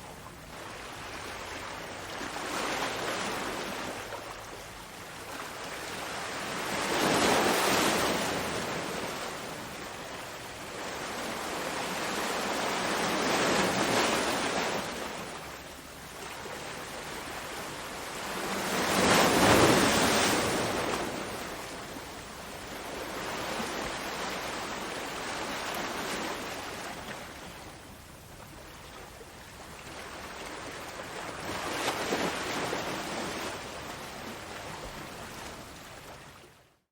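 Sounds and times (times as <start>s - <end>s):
ocean waves breaking: 17.1s - 22.1s.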